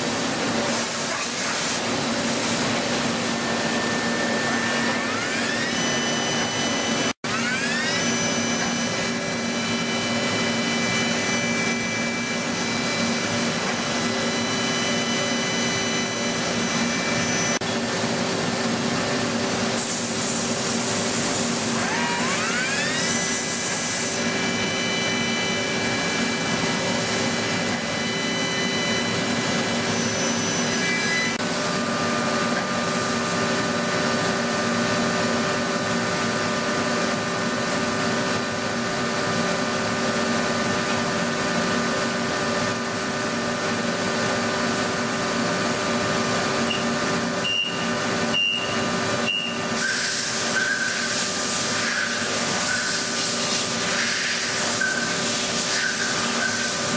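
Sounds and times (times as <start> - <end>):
machine hum and hiss: 0.0 - 56.9.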